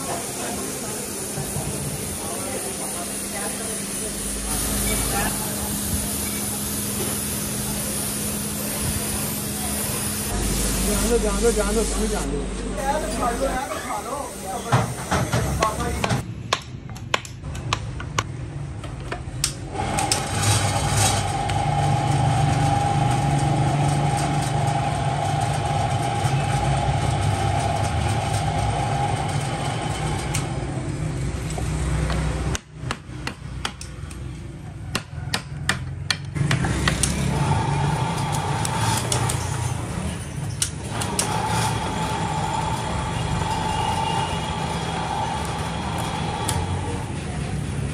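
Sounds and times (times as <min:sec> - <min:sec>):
workshop machinery whining: 0:00.0 - 0:16.3, 0:17.5 - 0:47.9.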